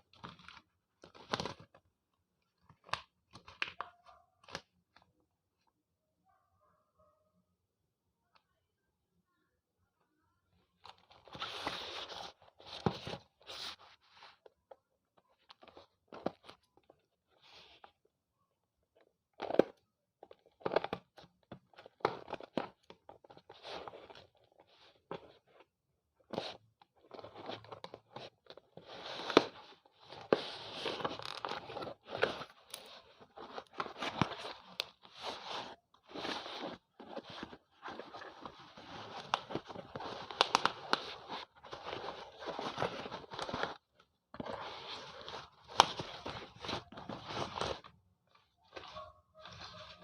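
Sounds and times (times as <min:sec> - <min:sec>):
pencils being chewed crunching: 0:26.4 - 0:50.0.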